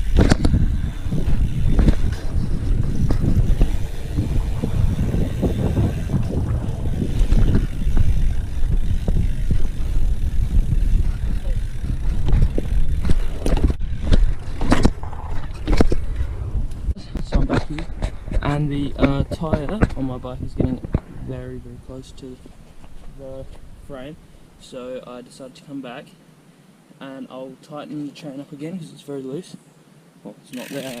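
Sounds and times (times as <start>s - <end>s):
bike knocks and rattles: 0.0s - 21.1s
bike rolling rumble: 0.0s - 24.5s
wind buffeting microphone: 0.0s - 24.6s.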